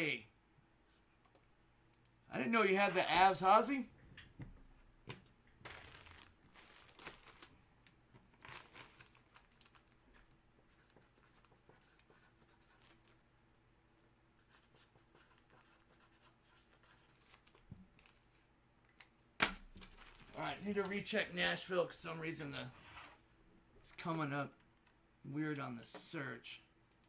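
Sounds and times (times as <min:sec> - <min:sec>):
faint scratching or rustling: 0:22.5 - 0:23.3.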